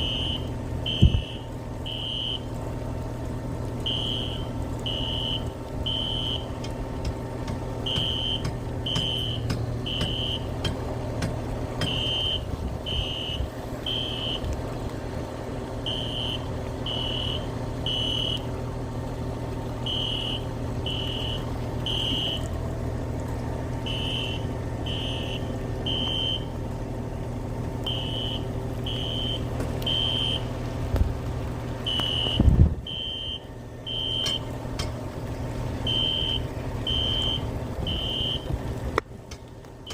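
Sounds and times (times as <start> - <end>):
fire alarm beeping: 31.9 - 34.4, 35.9 - 38.4.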